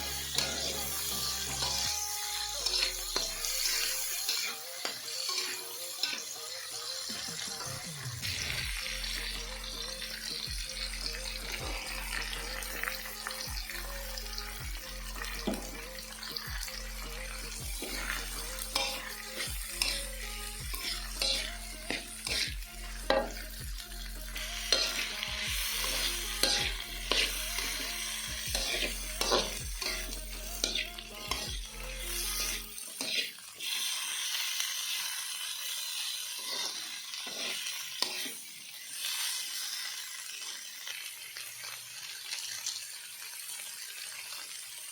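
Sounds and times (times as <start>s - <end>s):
spatula scraping a pan: 0.0s - 6.4s, 17.5s - 23.6s, 24.4s - 33.9s, 35.7s - 39.7s
food sizzling in a pan: 0.0s - 44.9s.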